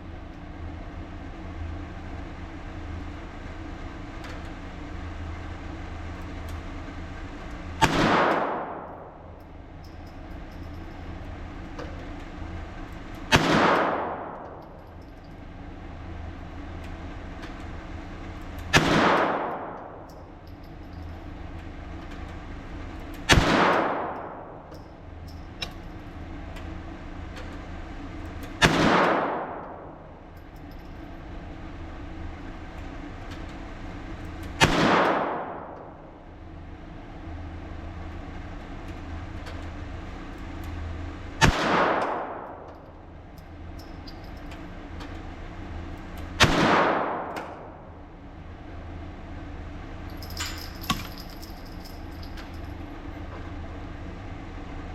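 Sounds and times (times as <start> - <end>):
steady low hum: 0.0 - 54.9
gunshots with echo: 7.8 - 9.3, 13.3 - 14.6, 18.8 - 20.1, 23.3 - 24.7, 28.6 - 30.0, 34.6 - 36.0, 41.4 - 42.6, 46.4 - 48.0.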